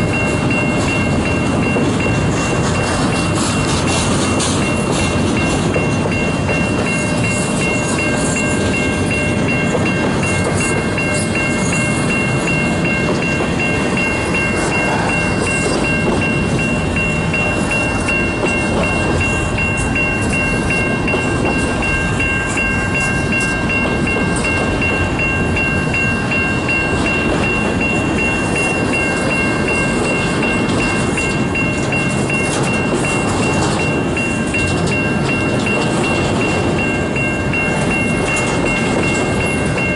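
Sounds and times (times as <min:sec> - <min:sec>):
crossing warning bell ringing: 0:00.0 - 0:39.9
freight train rolling: 0:00.0 - 0:39.9.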